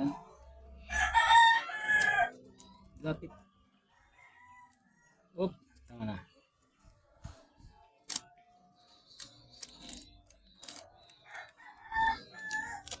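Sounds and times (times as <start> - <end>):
rooster crowing: 0.9 - 2.4, 11.2 - 12.9.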